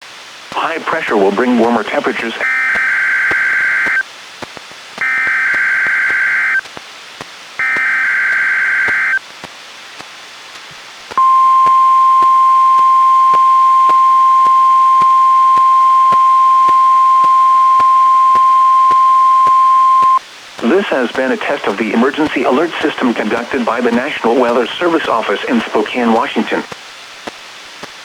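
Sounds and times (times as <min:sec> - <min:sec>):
steady warning alarm tone: 0:01.2 - 0:04.0, 0:05.0 - 0:06.6, 0:07.6 - 0:09.2, 0:11.2 - 0:20.2
warbling data buzz: 0:02.4 - 0:04.0, 0:05.0 - 0:06.6, 0:07.6 - 0:09.2, 0:11.2 - 0:20.2.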